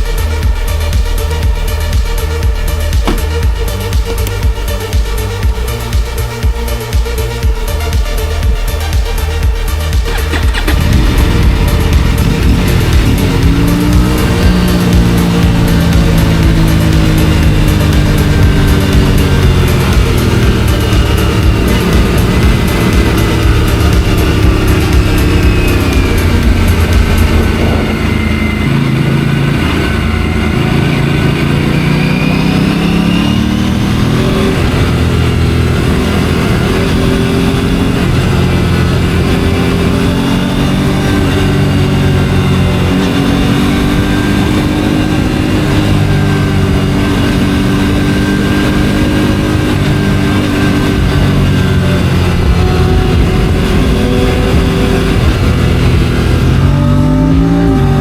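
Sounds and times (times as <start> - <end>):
motorcycle engine: 0.0 - 58.0.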